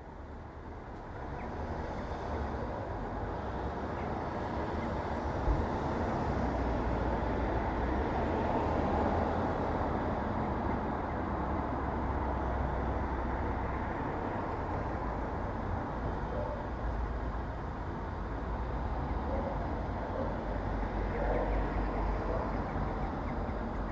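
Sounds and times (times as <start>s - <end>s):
passing traffic rumble: 0.7s - 23.9s.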